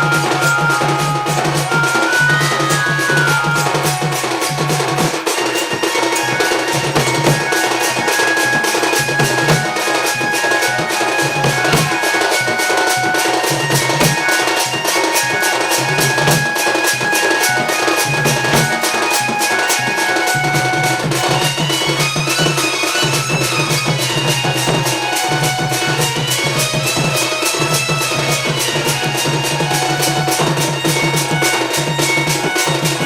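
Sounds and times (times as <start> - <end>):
fast dense drumming: 0.0 - 8.2, 20.7 - 33.0
held melodic line: 0.0 - 33.0.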